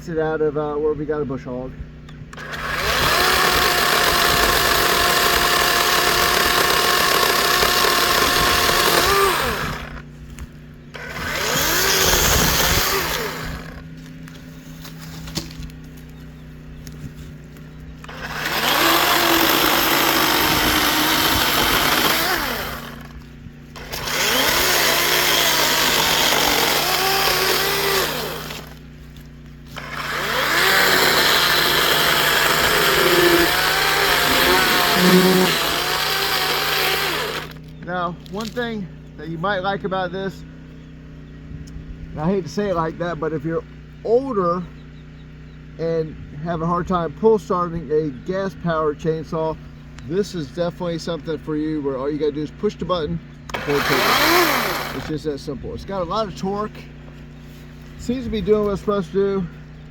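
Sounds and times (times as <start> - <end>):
chainsaw cutting logs: 2.3 - 38.7, 53.4 - 59.9.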